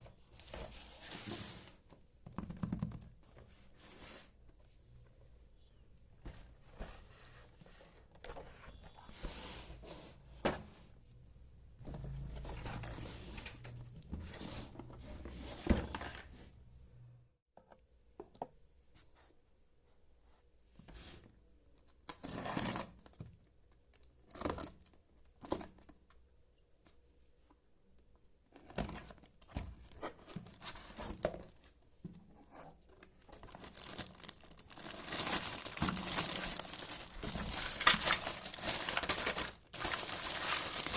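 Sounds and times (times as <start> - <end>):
packaging tearing and crinkling: 33.4 - 40.9.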